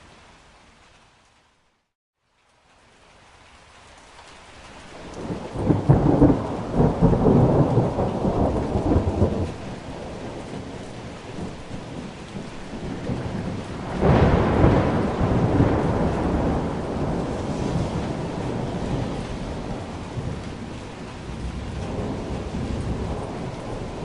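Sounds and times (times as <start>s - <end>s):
steady rain: 0.0s - 24.0s
thunder rumbling: 5.0s - 24.0s.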